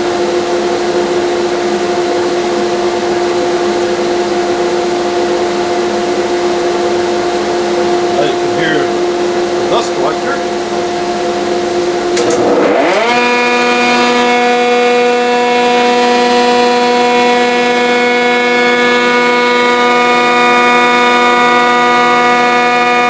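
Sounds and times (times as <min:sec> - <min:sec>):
dust collector running: 0:00.0 - 0:23.0
thickness planer motor whine: 0:00.0 - 0:23.0.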